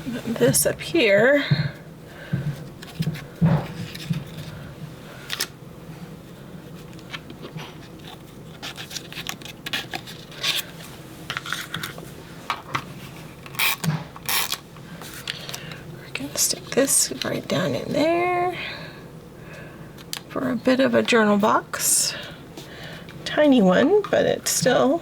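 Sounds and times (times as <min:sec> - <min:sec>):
paper scraping and rustling: 0:02.8 - 0:04.6, 0:06.7 - 0:12.0.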